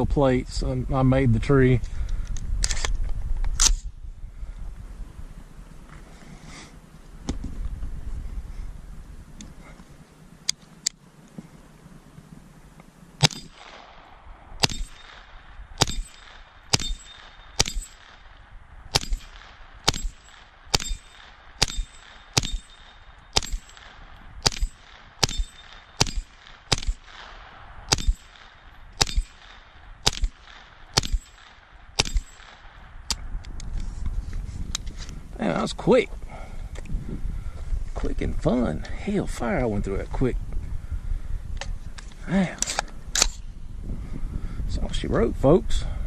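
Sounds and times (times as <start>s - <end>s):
carbine gunshots: 13.2s - 33.0s
sharp clicks: 14.6s - 33.8s
metallic ring of steel plates: 15.8s - 18.1s, 19.0s - 23.8s, 24.5s - 27.0s.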